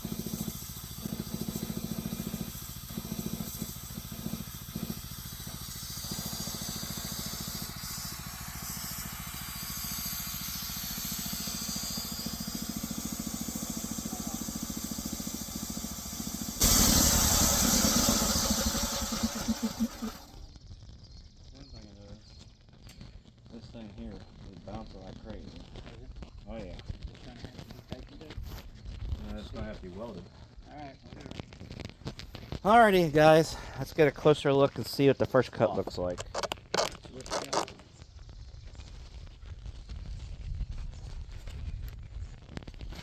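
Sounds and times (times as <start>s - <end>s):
band blade cutting log: 0.0s - 20.3s
sawmill motor running: 0.0s - 20.4s.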